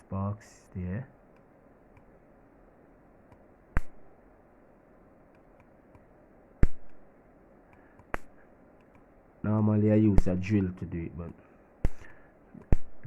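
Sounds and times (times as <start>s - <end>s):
ignition spark snaps: 3.3s - 4.2s, 5.3s - 7.1s, 7.7s - 10.6s, 11.8s - 13.0s.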